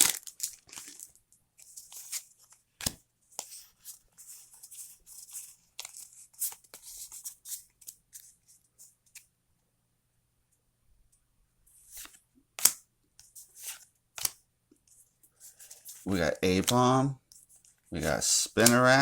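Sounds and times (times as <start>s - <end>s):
foil wrapper crinkling: 0.0s - 2.2s.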